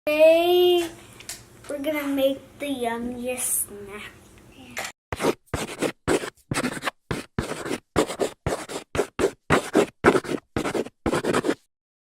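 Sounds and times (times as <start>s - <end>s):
short scratchy strokes: 5.1s - 11.7s.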